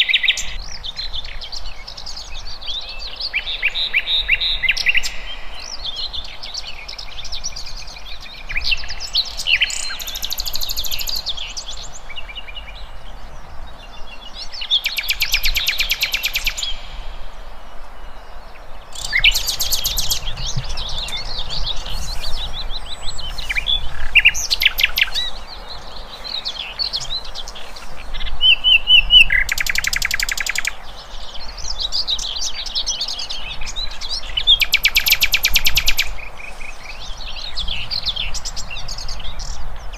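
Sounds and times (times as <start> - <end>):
birds singing and chirping: 0.0 - 39.9
low background noise: 0.0 - 39.9
fast bird trills: 19.0 - 25.4, 28.5 - 30.8.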